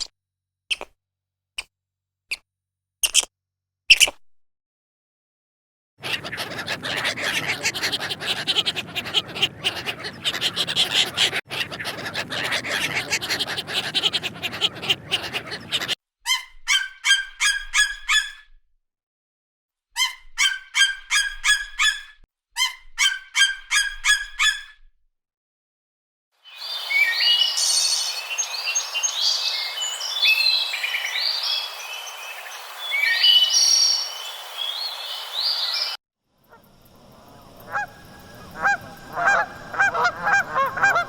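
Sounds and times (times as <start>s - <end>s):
birds honking: 6.0s - 16.0s, 37.3s - 41.0s
flock of birds chattering: 6.0s - 16.0s, 37.1s - 41.0s.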